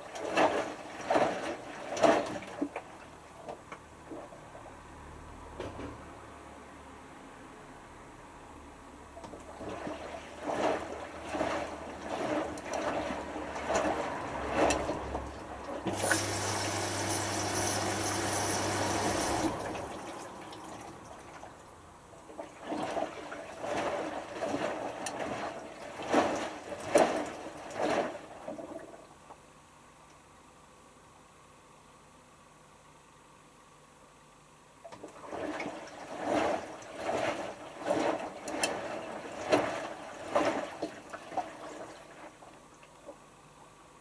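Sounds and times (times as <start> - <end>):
rush of water with low hum: 0.0 - 4.4, 9.2 - 29.1, 34.8 - 43.2
water sloshing: 0.0 - 4.4, 9.2 - 29.1, 34.9 - 43.2
washing machine drum turning: 9.2 - 21.2.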